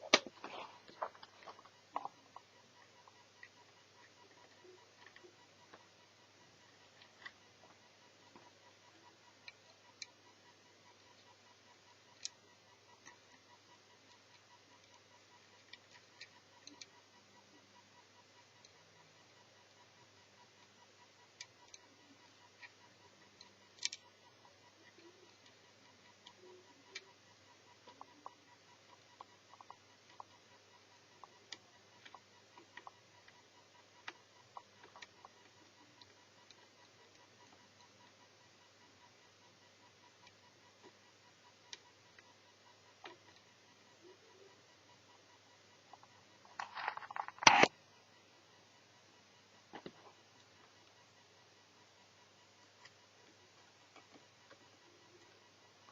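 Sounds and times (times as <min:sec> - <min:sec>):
faint steady ticking: 0:00.0 - 0:55.9
small clicks from handling parts: 0:23.4 - 0:24.1.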